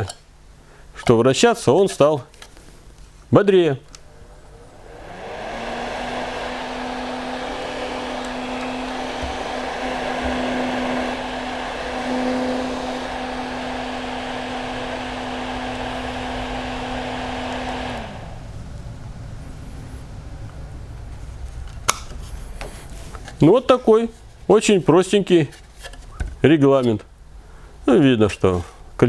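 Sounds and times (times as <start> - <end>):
exhaust fan running: 3.8 - 23.2.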